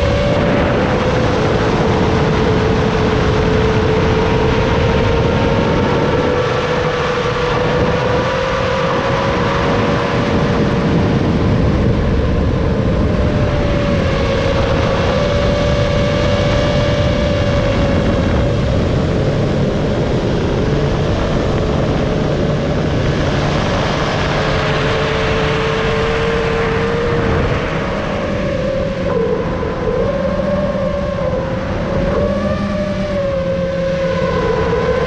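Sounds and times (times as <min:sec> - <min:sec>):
rough rushing noise: 0:00.0 - 0:34.0
drone motors whining: 0:00.0 - 0:35.0.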